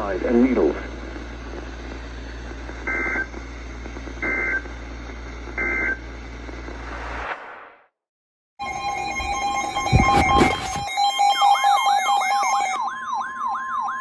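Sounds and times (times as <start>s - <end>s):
radio hiss and hum: 0.0s - 7.7s, 9.9s - 10.9s
screeching digital data tones: 8.6s - 12.8s.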